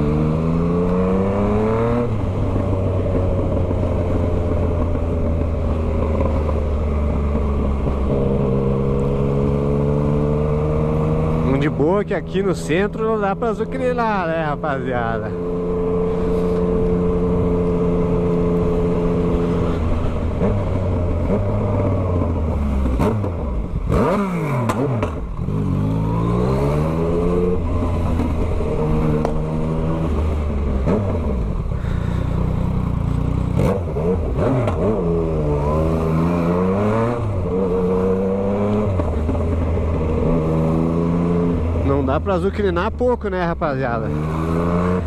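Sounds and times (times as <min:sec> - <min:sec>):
motorcycle engine revving: 0:00.0 - 0:45.0
exhaust crackles: 0:21.7 - 0:34.8.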